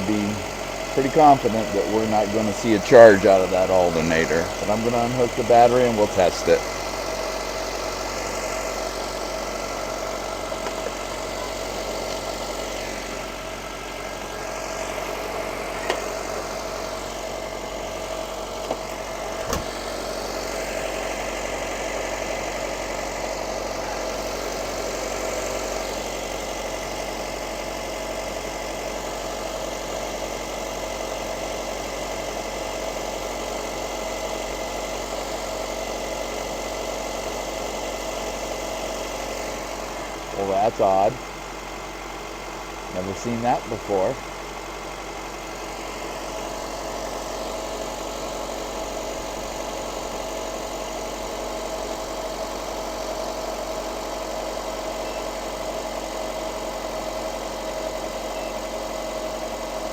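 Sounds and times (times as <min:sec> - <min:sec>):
car engine idling: 0:00.0 - 0:59.9.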